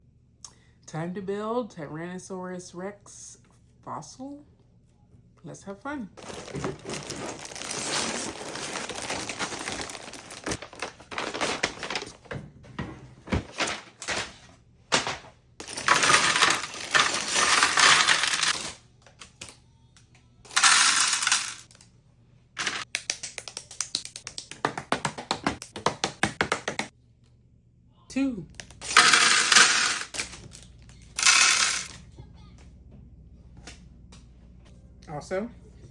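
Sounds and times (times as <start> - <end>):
plastic pieces clattering: 6.2 - 12.3, 13.4 - 18.8, 20.5 - 21.8, 22.6 - 22.9, 28.6 - 32.0.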